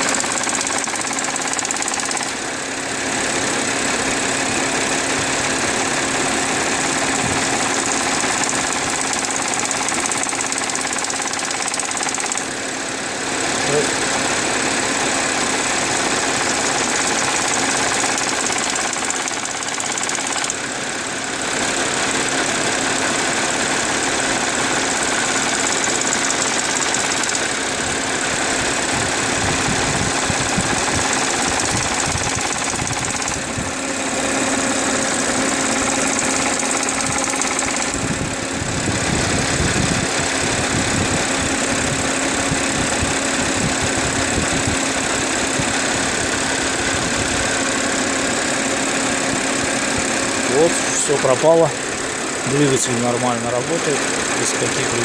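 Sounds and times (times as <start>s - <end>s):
car engine running: 0.0s - 55.0s
wavering engine noise: 24.2s - 47.5s, 48.8s - 55.0s.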